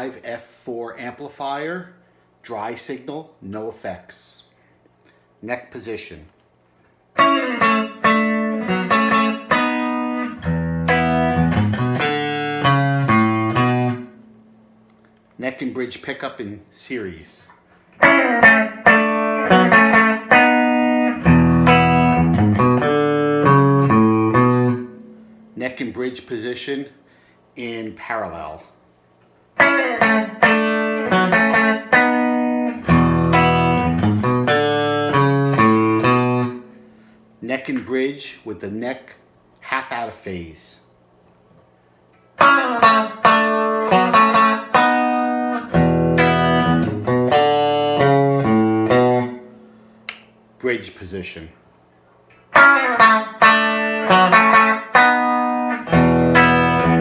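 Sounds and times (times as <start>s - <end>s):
clean electric guitar playing: 7.2s - 14.7s, 18.0s - 25.6s, 29.6s - 37.1s, 42.4s - 49.8s, 52.4s - 57.0s.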